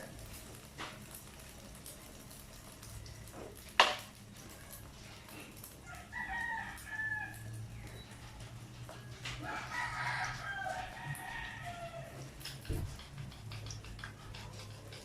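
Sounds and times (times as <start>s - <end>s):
rooster crowing: 5.8s - 7.7s, 9.4s - 12.3s.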